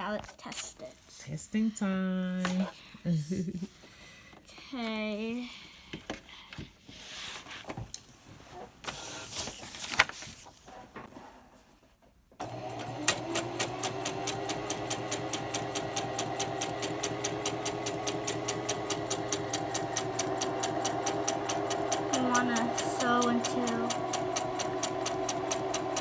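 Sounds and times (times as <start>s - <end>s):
sewing machine sewing: 12.4s - 26.0s.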